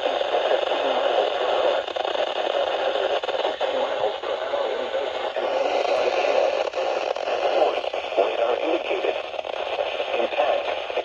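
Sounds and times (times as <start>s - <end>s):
radio hiss: 0.0s - 11.0s.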